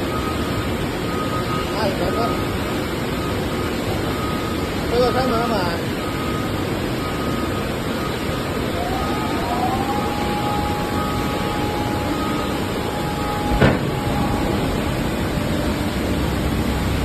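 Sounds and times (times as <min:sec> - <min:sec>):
machine whine: 0:00.0 - 0:17.0
baling press machine noise: 0:08.4 - 0:17.0
sharp knock: 0:13.5 - 0:13.9.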